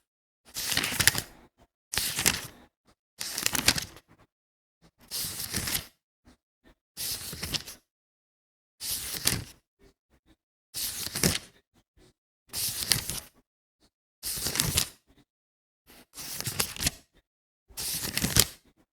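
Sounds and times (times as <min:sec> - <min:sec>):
book pages turning: 0:00.6 - 0:01.2, 0:02.0 - 0:02.5, 0:03.2 - 0:04.0, 0:05.1 - 0:05.8, 0:07.1 - 0:07.7, 0:09.0 - 0:09.5, 0:10.8 - 0:11.4, 0:12.6 - 0:13.2, 0:16.3 - 0:16.9, 0:17.8 - 0:18.5.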